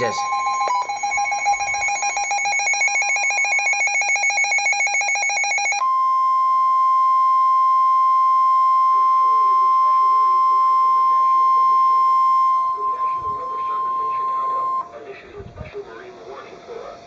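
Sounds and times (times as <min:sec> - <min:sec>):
rapidly pulsing alarm beep: 0:00.0 - 0:05.8, 0:11.1 - 0:14.9
steady alarm tone: 0:00.0 - 0:05.9, 0:10.2 - 0:15.0.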